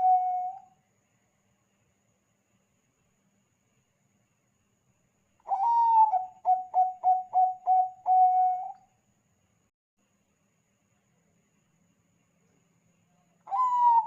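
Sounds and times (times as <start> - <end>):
dove cooing: 0.0 - 0.6, 5.5 - 8.8, 13.5 - 14.0.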